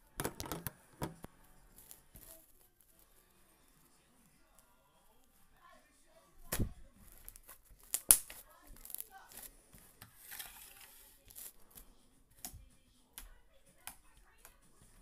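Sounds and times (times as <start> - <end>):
slime crackling and rustling: 1.7 - 3.3, 6.8 - 9.6, 10.2 - 11.6.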